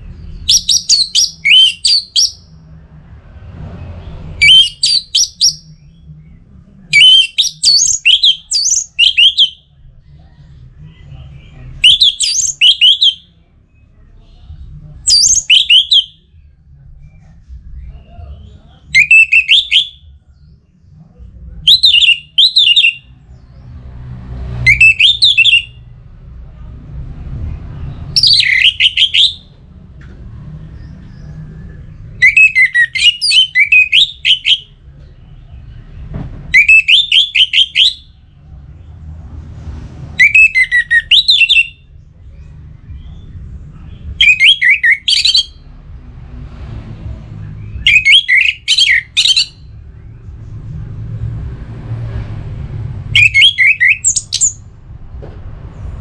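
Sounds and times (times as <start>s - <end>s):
thrush singing: 0.0s - 16.5s.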